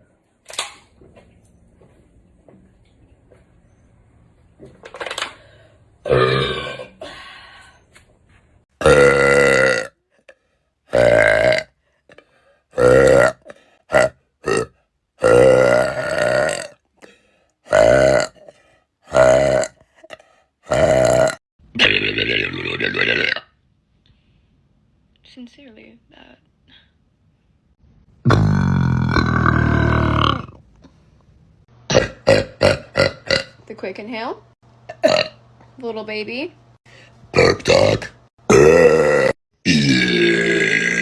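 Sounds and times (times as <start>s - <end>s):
woman burping loudly: 6.0s - 7.1s, 8.8s - 10.0s, 10.9s - 11.8s, 12.8s - 16.8s, 17.7s - 18.5s, 19.1s - 23.6s, 28.2s - 30.6s, 31.9s - 33.6s, 34.9s - 35.4s, 37.4s - 41.0s.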